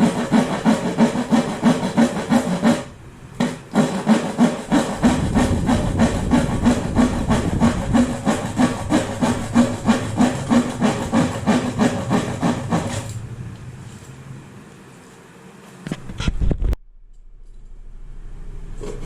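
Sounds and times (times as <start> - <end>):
hand saw cutting wood: 0.0 - 13.2.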